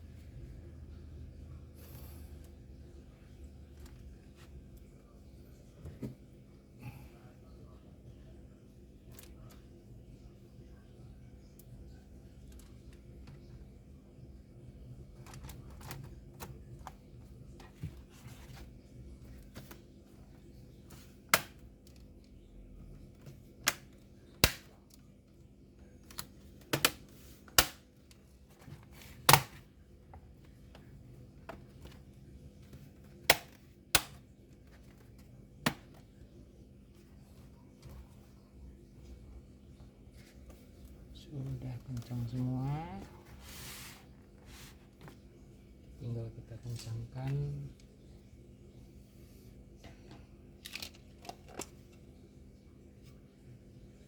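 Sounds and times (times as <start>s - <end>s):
low steady hum: 0.0s - 54.0s
laptop parts clicking and snapping: 15.2s - 17.0s, 21.3s - 22.0s, 23.6s - 24.8s, 26.1s - 27.8s, 29.2s - 29.6s, 33.3s - 34.2s.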